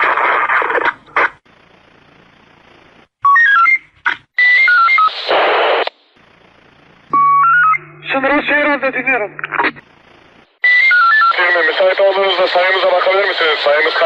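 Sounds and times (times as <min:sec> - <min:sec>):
loud static bursts: 0:00.0 - 0:03.2, 0:05.0 - 0:14.0
radio beeps stepping in pitch: 0:07.1 - 0:09.8, 0:10.6 - 0:13.3.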